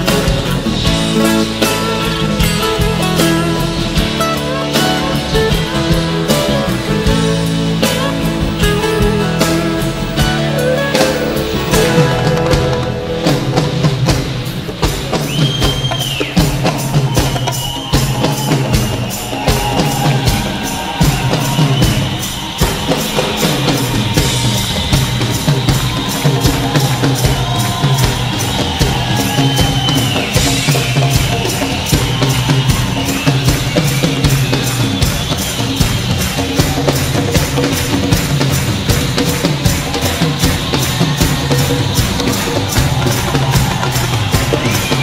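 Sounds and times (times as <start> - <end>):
music with fast beat: 0.0 - 45.0
tambourine-like percussion: 14.8 - 45.0.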